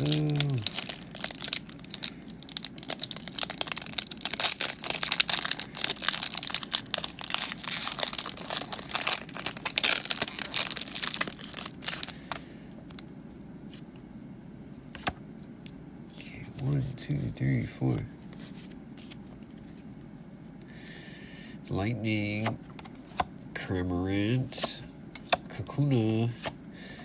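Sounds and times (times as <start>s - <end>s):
foil wrapper tearing and crinkling: 0.0s - 12.2s.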